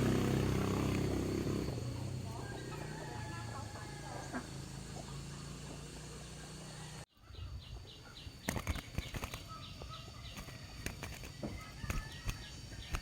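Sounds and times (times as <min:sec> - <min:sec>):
bird chirps: 0:04.4 - 0:13.0
bird wings flapping: 0:08.4 - 0:09.6, 0:10.3 - 0:13.0.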